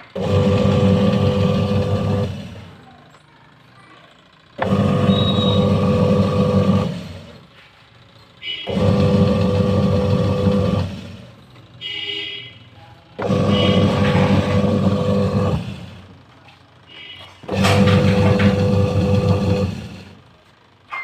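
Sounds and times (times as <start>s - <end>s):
washing machine motor humming: 0.0s - 3.2s, 4.2s - 7.6s, 8.4s - 11.7s, 13.1s - 16.4s, 17.4s - 20.5s.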